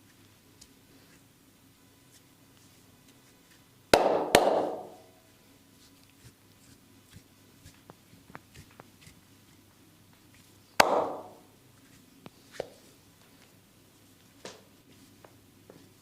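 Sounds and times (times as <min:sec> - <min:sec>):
hands slapping bare skin: 0:10.8 - 0:11.4.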